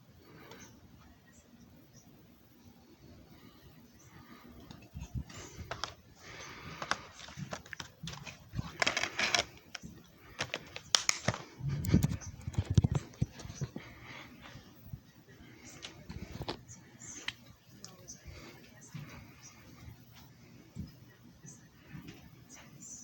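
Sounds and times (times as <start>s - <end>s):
rustling: 4.2s - 14.8s
handling clicks and knocks: 5.3s - 13.9s.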